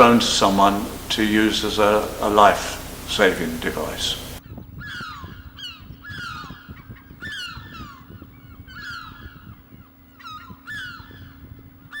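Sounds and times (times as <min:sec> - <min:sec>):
faint low hum: 0:00.0 - 0:04.4.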